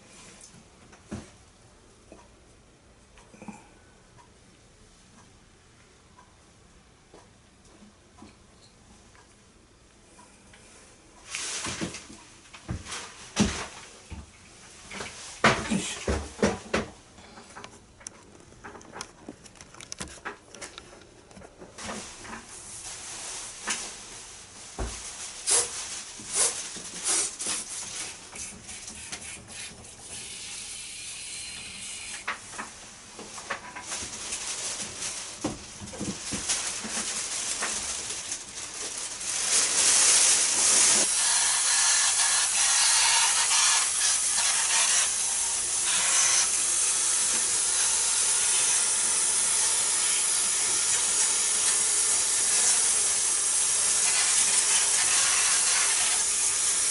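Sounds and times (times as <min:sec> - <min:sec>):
handling clicks and knocks: 0:17.6 - 0:21.6
cleaning spray hissing: 0:25.4 - 0:27.7, 0:39.8 - 0:56.9.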